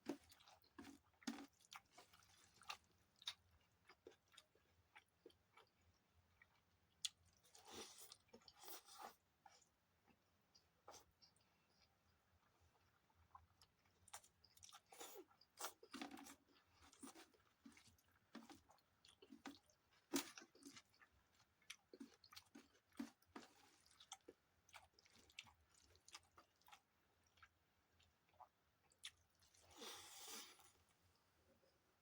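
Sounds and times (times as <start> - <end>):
mouth chewing food: 0.0 - 30.9.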